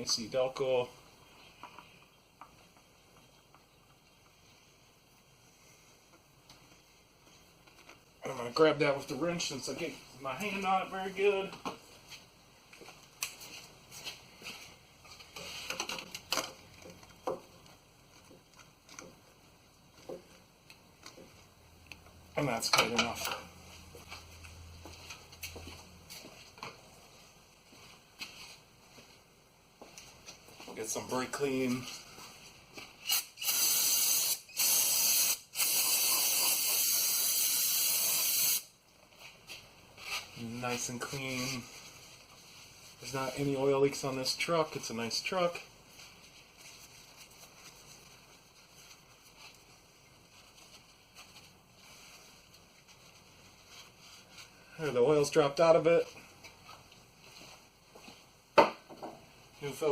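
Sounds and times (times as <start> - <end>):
aerosol can spraying: 33.1 - 38.7.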